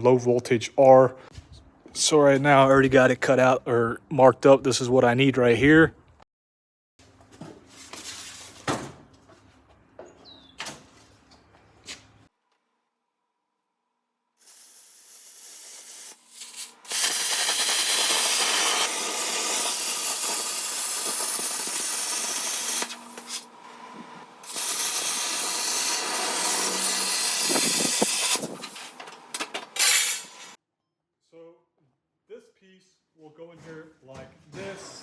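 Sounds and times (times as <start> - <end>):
plasma cutter hissing: 14.4 - 23.5, 24.4 - 29.0, 29.7 - 30.6.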